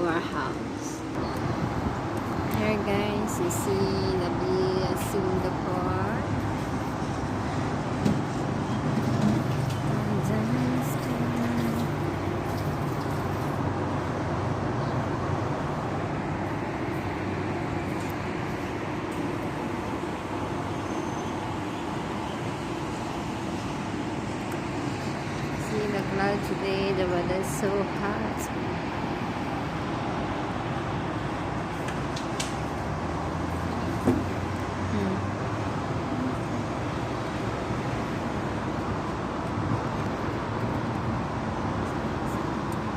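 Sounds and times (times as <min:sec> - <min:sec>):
distant city traffic hum: 0:00.0 - 0:42.9.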